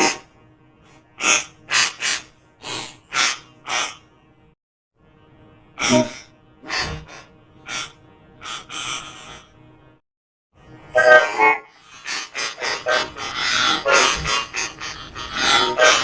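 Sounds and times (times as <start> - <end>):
robotic sobbing gasps: 1.2 - 4.0, 5.8 - 9.6, 11.8 - 16.0.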